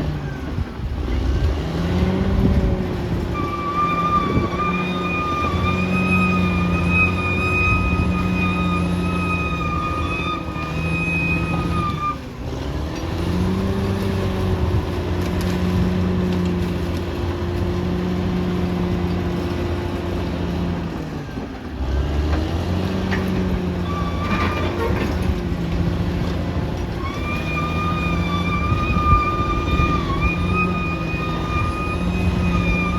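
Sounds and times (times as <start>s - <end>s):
bulldozer diesel engine running: 0.0s - 32.9s
high squeal: 3.3s - 12.3s, 23.8s - 25.2s, 26.9s - 32.9s
metal clanks: 22.3s - 28.7s.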